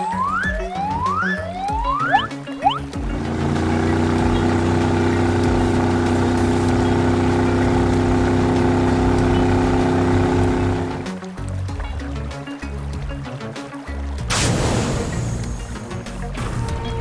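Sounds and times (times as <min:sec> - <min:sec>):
vehicle engine running steadily: 0:02.7 - 0:11.2.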